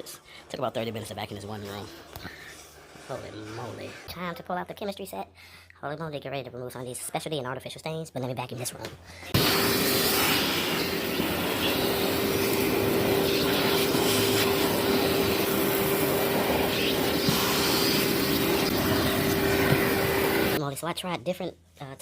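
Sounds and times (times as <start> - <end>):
vacuum cleaner running: 9.3 - 20.6
debris crackling in vacuum: 9.4 - 20.6.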